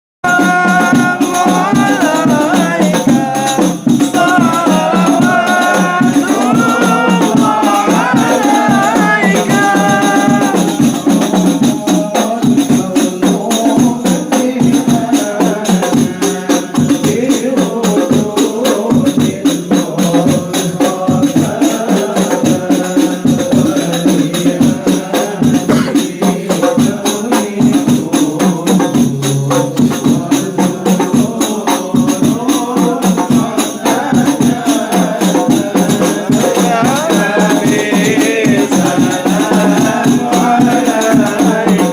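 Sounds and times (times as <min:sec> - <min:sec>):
frame drums with jingles: 0:00.2 - 0:41.9
group devotional singing: 0:00.2 - 0:41.9.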